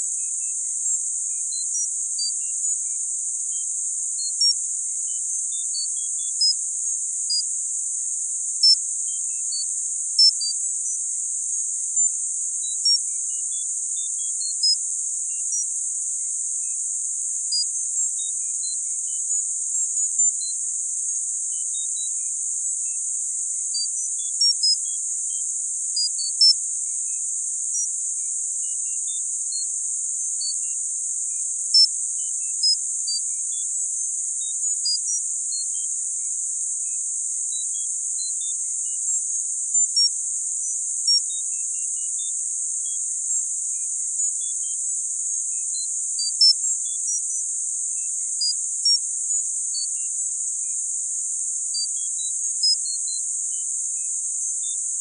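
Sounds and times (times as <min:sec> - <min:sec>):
steady high-pitched hiss: 0:00.0 - 0:55.0.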